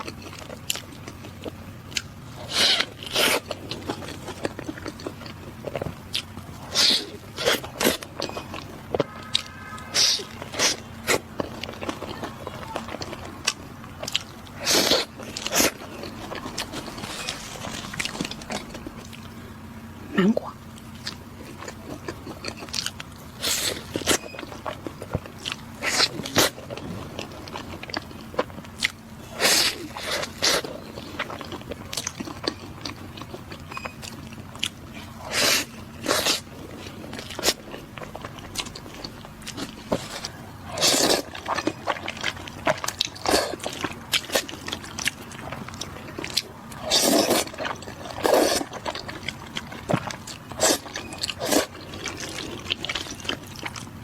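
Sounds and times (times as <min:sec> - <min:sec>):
crunchy eating and chewing: 0:00.0 - 0:54.0
wet mouth sounds: 0:20.0 - 0:26.8, 0:34.6 - 0:53.9.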